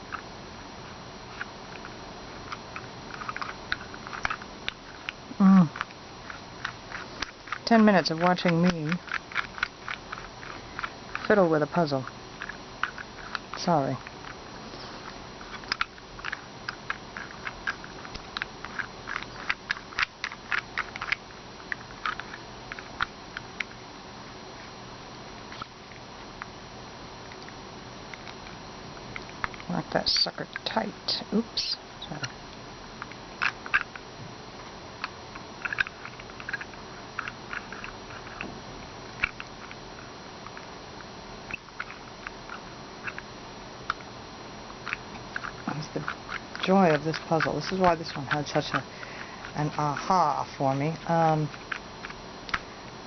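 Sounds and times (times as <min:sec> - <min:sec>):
wooden puzzle box clicking: 0:01.3 - 0:11.3, 0:12.4 - 0:14.4, 0:15.4 - 0:23.8, 0:35.0 - 0:38.4, 0:41.5 - 0:43.2, 0:44.8 - 0:52.6.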